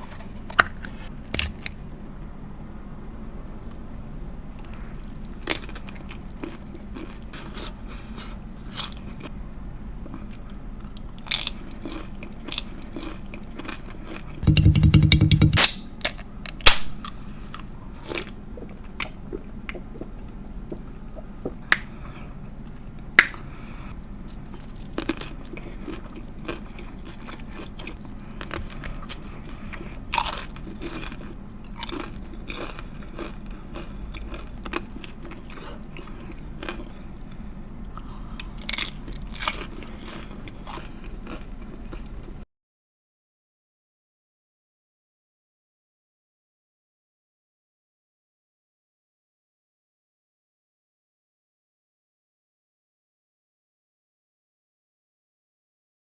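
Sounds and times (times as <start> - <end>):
crunchy bites and wet chewing: 10.1 - 22.2, 24.3 - 42.4.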